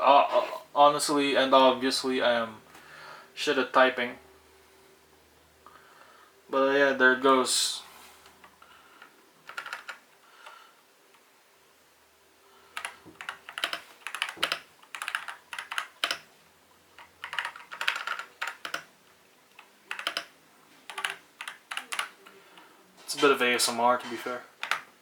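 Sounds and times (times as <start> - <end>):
mechanical keyboard typing: 9.4 - 10.0, 12.8 - 16.3, 16.9 - 18.9, 19.5 - 22.3, 24.6 - 24.9.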